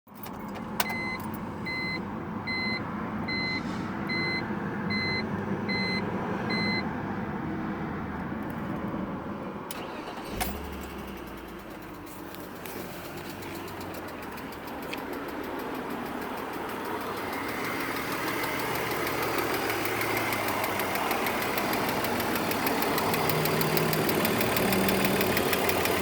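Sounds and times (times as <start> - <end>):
electronic beeps: 0.8 - 6.8
car engine idling: 9.7 - 26.0
engine ticking: 9.7 - 26.0.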